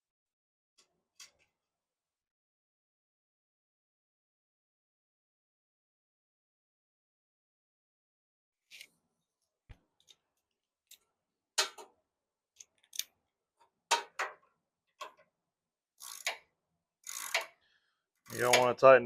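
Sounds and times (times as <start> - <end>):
small metallic clicks: 12.6 - 15.3, 16.0 - 17.6, 18.2 - 18.8.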